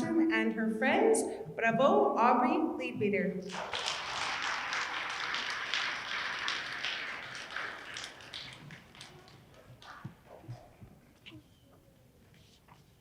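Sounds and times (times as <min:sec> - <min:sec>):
audience applause: 0:03.5 - 0:10.1.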